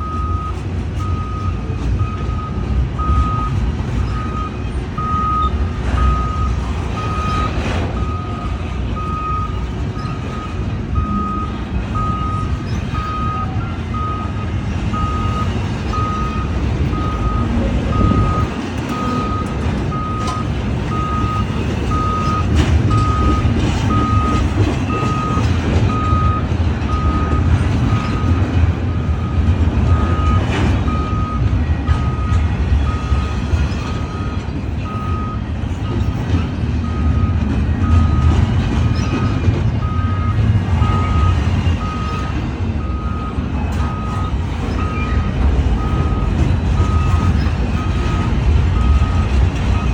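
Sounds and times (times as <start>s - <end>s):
electronic warning beep: 0.0s - 49.9s
freight cars rumbling on rails: 0.0s - 49.9s
wheels clicking and squeaking: 29.9s - 49.9s.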